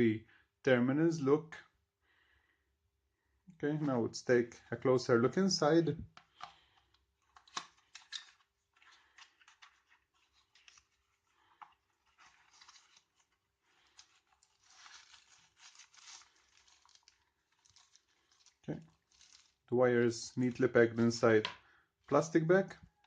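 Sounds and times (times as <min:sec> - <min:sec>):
packaging rustling and crinkling: 0:06.6 - 0:19.7.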